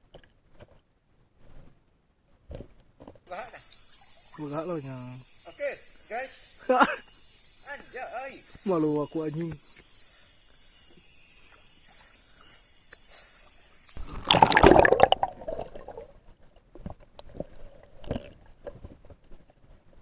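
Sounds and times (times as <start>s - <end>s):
night insect chorus: 3.3s - 14.2s
loud splash into water: 14.0s - 15.8s
rush of bubbles: 14.0s - 16.2s.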